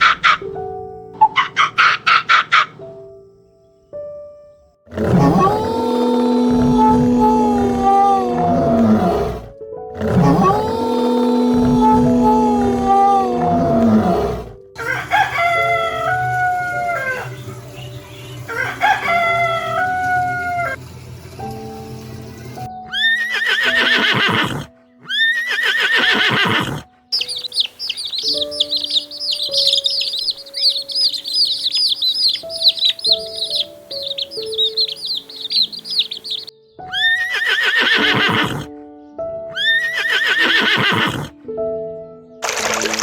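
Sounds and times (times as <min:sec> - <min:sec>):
loud quavering animal calls: 0:00.0 - 0:00.6, 0:01.2 - 0:03.0, 0:04.9 - 0:17.5, 0:18.5 - 0:20.8, 0:22.9 - 0:38.7, 0:39.6 - 0:41.4
background music: 0:00.0 - 0:43.0
rapid high chirping: 0:26.6 - 0:38.6.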